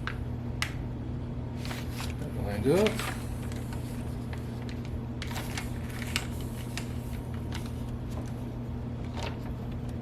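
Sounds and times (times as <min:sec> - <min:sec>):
vacuum pump humming: 0:00.0 - 0:10.0
plastic bag crackling: 0:01.6 - 0:08.4.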